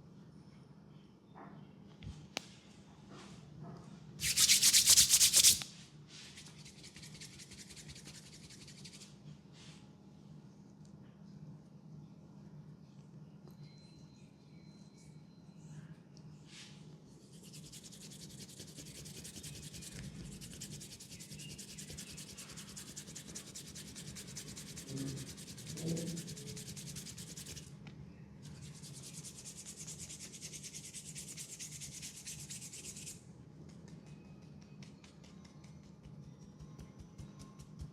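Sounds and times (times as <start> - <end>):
hands rubbing briskly: 4.2 - 5.6, 6.4 - 9.1, 17.4 - 27.7, 33.8 - 37.9.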